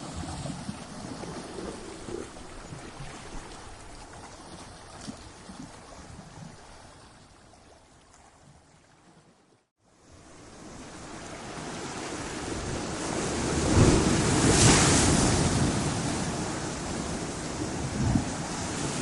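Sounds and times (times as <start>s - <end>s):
ocean surf on rocks: 10.0s - 19.0s.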